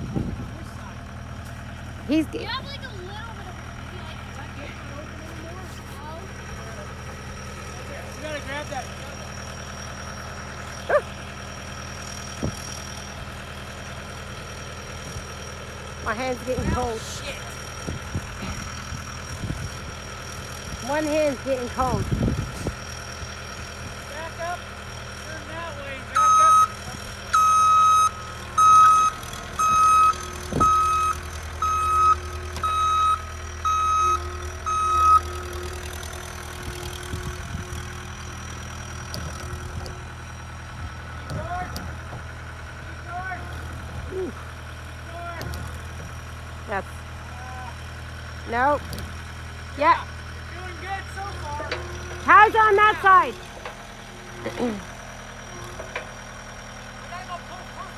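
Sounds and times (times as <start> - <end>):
skid steer engine idling: 0.0 - 57.9
reversing alarm beeping: 26.1 - 38.1.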